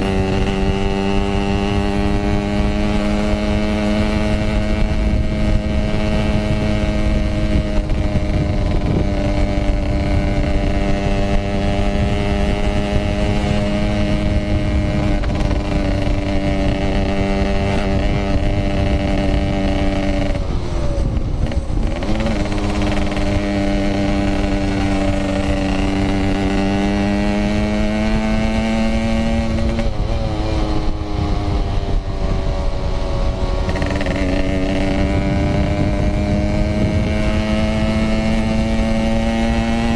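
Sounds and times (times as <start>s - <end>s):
two-stroke motorcycle engine running: 0.0s - 39.9s.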